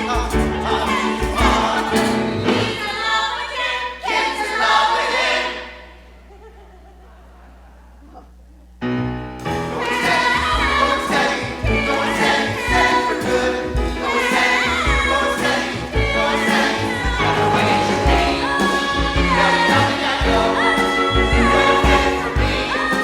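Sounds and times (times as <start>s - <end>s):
piano accompaniment: 0.0s - 2.8s, 8.9s - 23.0s
vocal ensemble singing in harmony: 0.0s - 6.3s, 9.5s - 23.0s.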